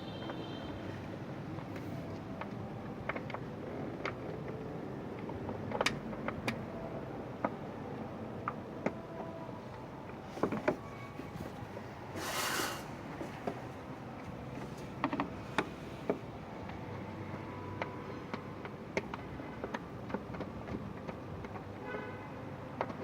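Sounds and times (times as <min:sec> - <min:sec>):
brief hiss: 0:12.2 - 0:13.0.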